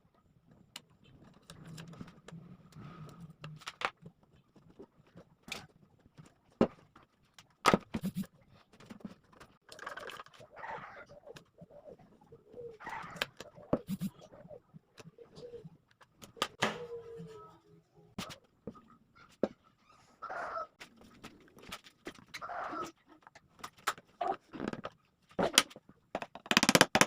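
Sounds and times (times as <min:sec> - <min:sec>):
bird cooing: 0:09.8 - 0:18.0, 0:19.9 - 0:21.6, 0:22.4 - 0:23.0.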